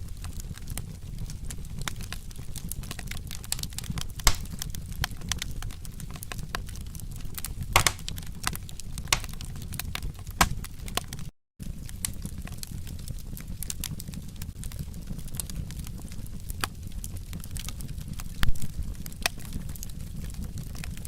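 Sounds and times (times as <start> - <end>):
low rumble of flames: 0.0 - 21.0
wood fire crackling and popping: 0.0 - 21.0.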